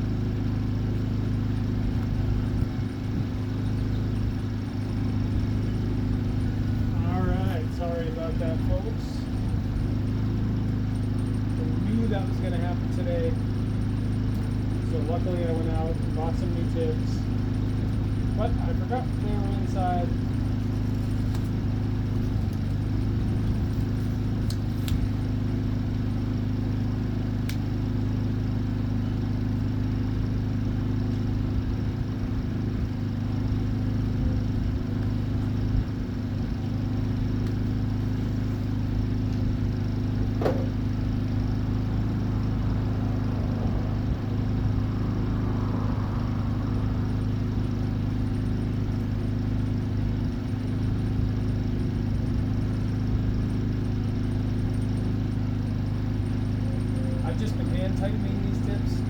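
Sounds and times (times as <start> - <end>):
low machine hum: 0.0 - 59.0
sharp tick: 27.4 - 27.7.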